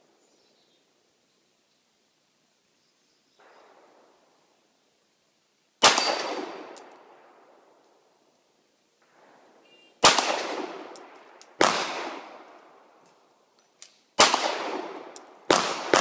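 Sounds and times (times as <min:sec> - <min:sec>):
pistol shot with echo: 0:05.8 - 0:07.4, 0:09.0 - 0:12.5, 0:14.2 - 0:16.0.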